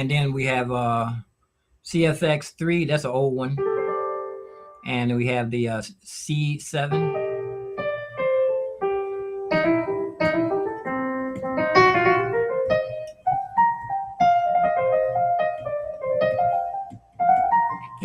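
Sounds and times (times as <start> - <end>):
piano melody: 3.5 - 4.9, 6.9 - 18.0.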